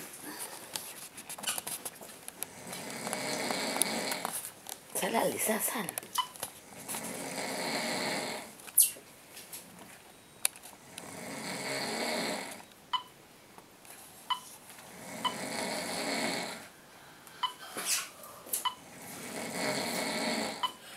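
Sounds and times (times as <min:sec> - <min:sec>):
man snoring: 0:02.5 - 0:04.3, 0:06.6 - 0:08.5, 0:10.8 - 0:12.6, 0:14.8 - 0:16.7, 0:18.8 - 0:20.7.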